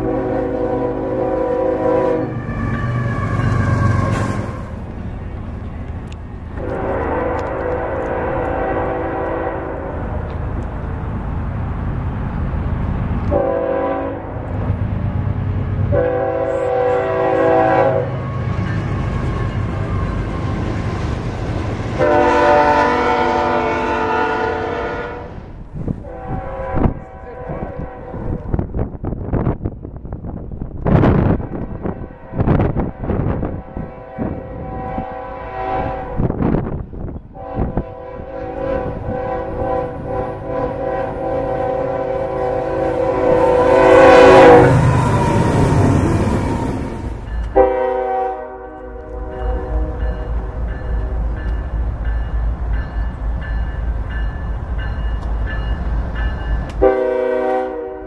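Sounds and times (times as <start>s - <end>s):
locomotive air horn: 0.0s - 4.7s, 6.6s - 10.2s, 13.3s - 14.4s, 15.9s - 20.6s, 22.0s - 25.4s, 26.0s - 28.5s, 31.4s - 36.3s, 37.4s - 50.3s, 56.8s - 58.0s
train rumbling: 0.0s - 58.0s.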